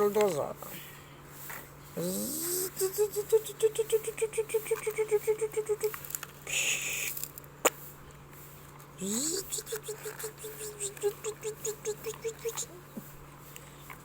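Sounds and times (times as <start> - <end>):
child imitating engine noise: 2.0 - 7.2, 9.0 - 12.9.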